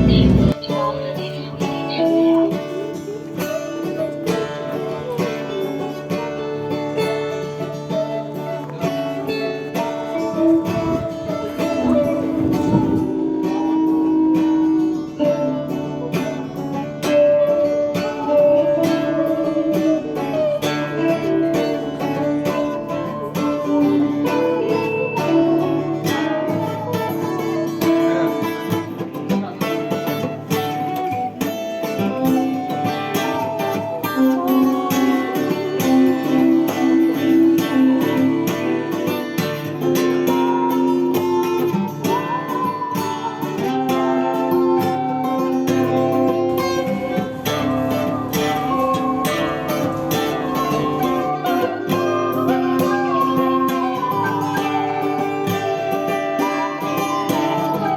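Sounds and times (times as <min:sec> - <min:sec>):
low bass line: 0:00.0 - 0:00.6
plucked and strummed guitars: 0:00.0 - 0:57.9.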